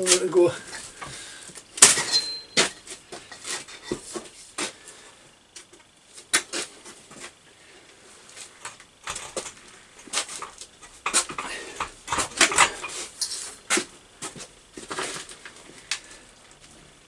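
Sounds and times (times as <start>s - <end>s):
pipe bender clicks and knocks: 8.6s - 13.4s.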